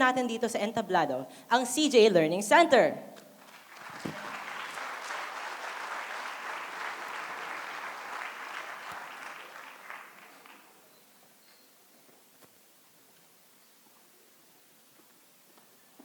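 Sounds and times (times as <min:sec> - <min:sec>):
audience applauding: 0:03.4 - 0:10.8.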